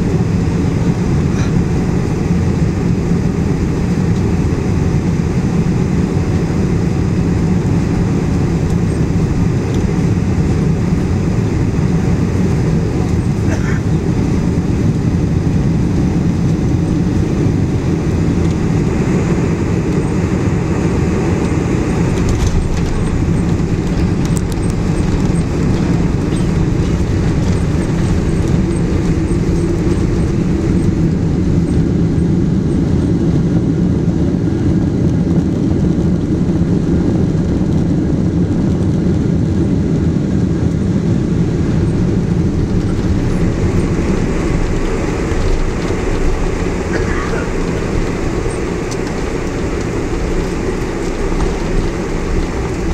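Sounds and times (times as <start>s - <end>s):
jet airliner rumble: 0.0s - 52.9s.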